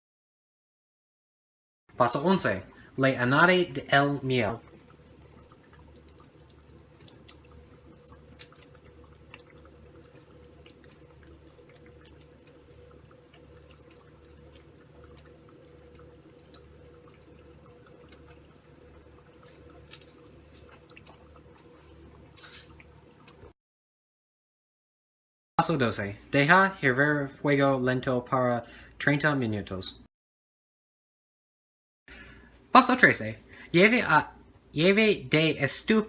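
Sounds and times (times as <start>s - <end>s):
steady low hum: 2.0s - 23.5s
faint drips: 2.4s - 23.5s
small clicks and ticks: 5.6s - 18.5s, 19.3s - 21.6s.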